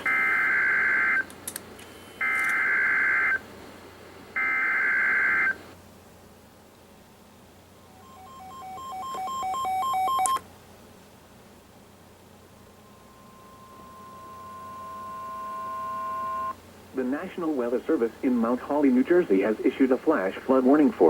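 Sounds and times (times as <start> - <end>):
buzzy digital data bursts: 12.8 - 16.6.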